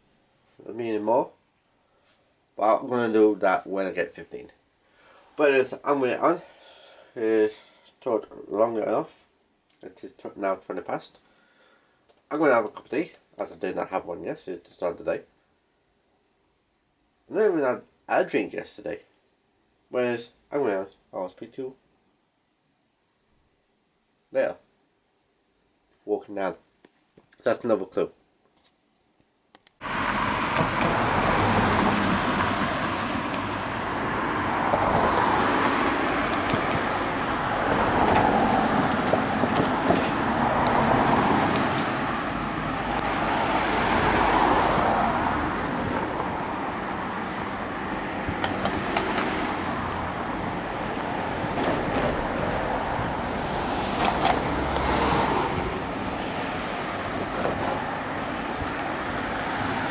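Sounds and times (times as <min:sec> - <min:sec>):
cars passing close by: 0:29.8 - 0:59.9.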